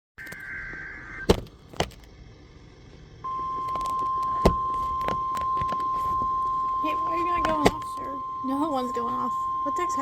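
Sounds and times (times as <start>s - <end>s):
steady warning alarm tone: 3.2s - 10.0s.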